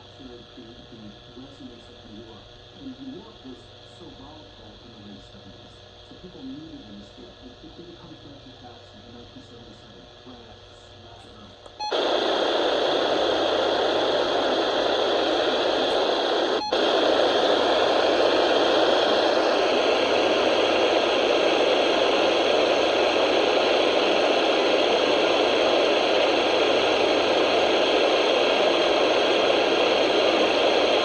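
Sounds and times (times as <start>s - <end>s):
radio static hiss: 0.0s - 31.0s.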